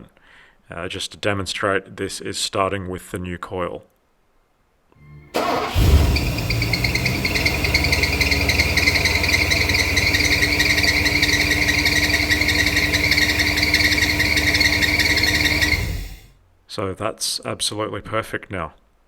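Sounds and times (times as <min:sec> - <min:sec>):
car engine idling with whine: 0:05.0 - 0:16.3.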